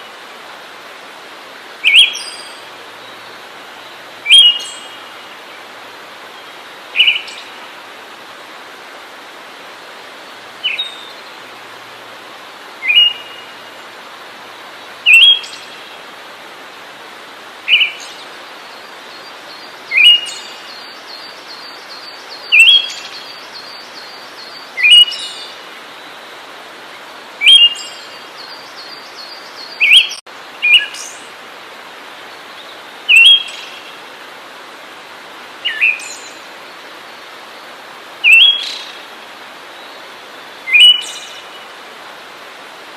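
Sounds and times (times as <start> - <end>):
steady hiss: 0.0 - 42.9
songbird sharp call: 4.3 - 5.0, 40.7 - 41.5.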